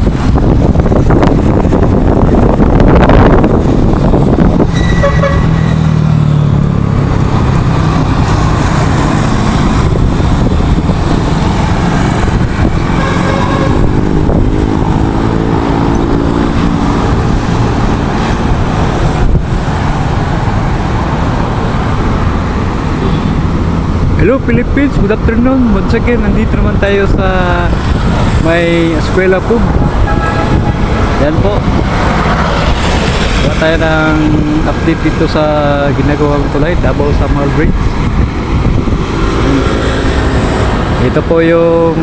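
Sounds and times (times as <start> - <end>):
road traffic passing: 0.0 - 42.0
car horn toots: 4.7 - 5.9, 12.9 - 14.1, 29.8 - 30.8.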